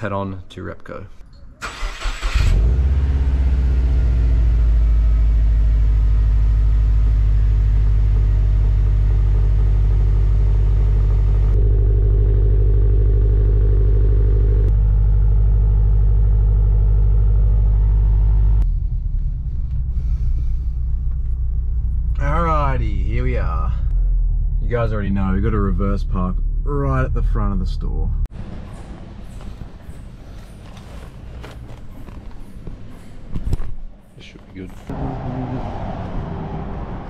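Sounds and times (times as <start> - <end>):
car engine drone while driving: 1.6 - 28.7, 34.9 - 37.0.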